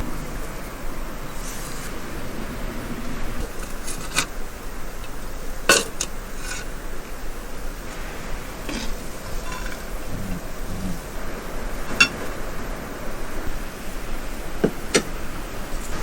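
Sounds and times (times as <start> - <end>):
steady background noise: 0.0 - 16.0
dishes and utensils clinking: 5.7 - 6.7, 8.7 - 9.9.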